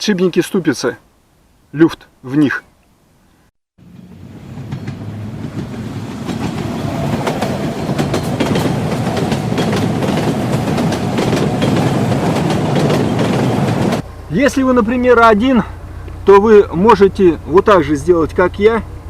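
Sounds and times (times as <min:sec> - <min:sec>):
car suspension knocking and rattling: 0:04.6 - 0:14.3.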